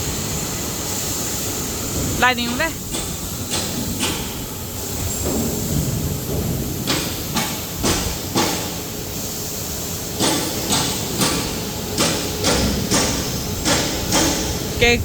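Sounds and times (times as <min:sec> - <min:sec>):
clanking hissing strokes: 0:00.0 - 0:15.0.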